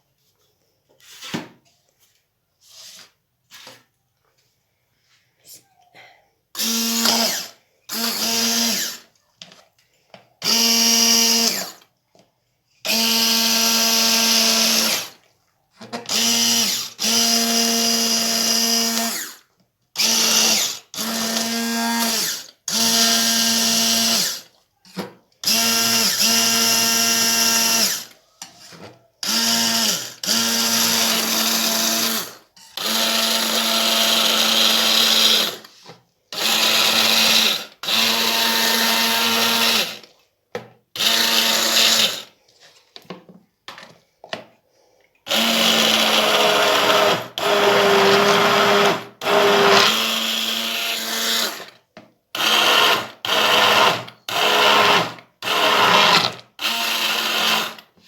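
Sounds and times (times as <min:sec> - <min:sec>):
electric blender motor whine: 0:06.6 - 0:09.1, 0:10.4 - 0:11.8, 0:12.9 - 0:15.2, 0:16.1 - 0:19.4, 0:20.0 - 0:24.4, 0:25.4 - 0:28.2, 0:29.2 - 0:35.7, 0:36.4 - 0:40.0, 0:41.0 - 0:42.3, 0:45.3 - 0:51.8, 0:52.4 - 0:57.9.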